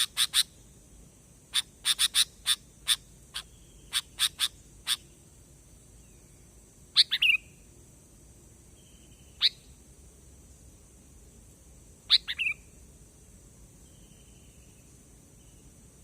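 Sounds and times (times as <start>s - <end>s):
bird calling: 0.0s - 0.5s, 1.5s - 5.1s, 7.0s - 7.5s, 9.2s - 9.7s, 12.1s - 12.7s
faint high hiss: 0.0s - 16.0s.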